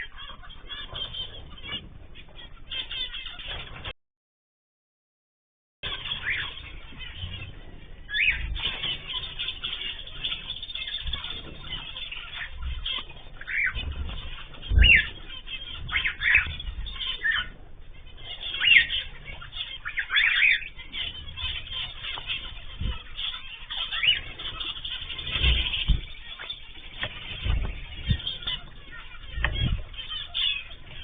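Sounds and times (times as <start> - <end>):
caged birds chattering: 0.0 - 4.0, 5.8 - 31.0
low thumps: 12.4 - 18.2, 25.1 - 30.1.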